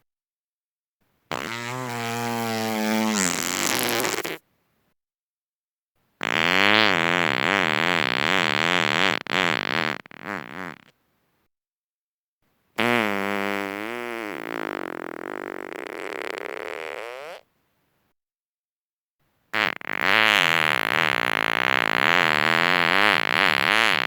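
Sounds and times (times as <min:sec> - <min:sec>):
long human farts: 0:01.3 - 0:04.4, 0:06.2 - 0:11.0, 0:12.8 - 0:17.5, 0:19.5 - 0:24.0.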